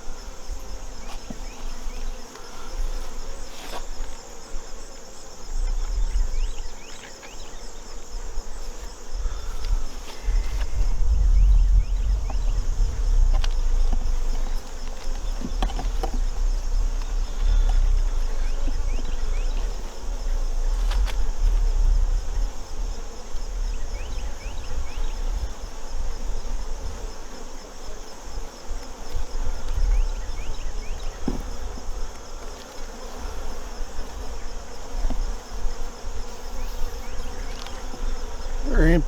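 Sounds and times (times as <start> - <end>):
honeybees buzzing: 0.0 - 39.0
low rumble: 5.5 - 6.7, 9.1 - 25.5, 29.5 - 31.2.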